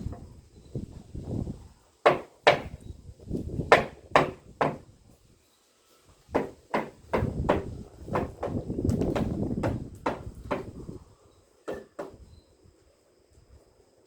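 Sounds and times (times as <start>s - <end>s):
hand tool knocking on wood: 2.1s - 2.7s, 3.7s - 4.8s, 6.4s - 10.7s, 11.7s - 12.2s.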